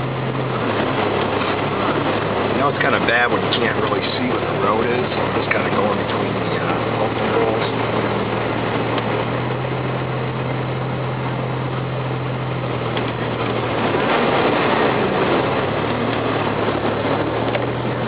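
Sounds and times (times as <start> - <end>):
steady rushing noise: 0.0 - 18.0
vehicle engine running: 0.0 - 18.0.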